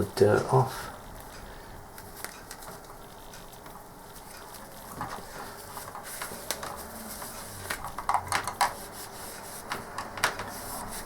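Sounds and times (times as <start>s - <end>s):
wipe rubbing along cable: 4.5s - 7.9s, 8.6s - 9.8s, 10.4s - 11.0s.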